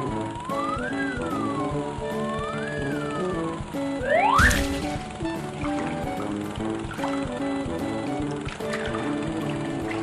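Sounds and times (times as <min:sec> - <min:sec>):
bouncy cartoon music: 0:00.0 - 0:10.0.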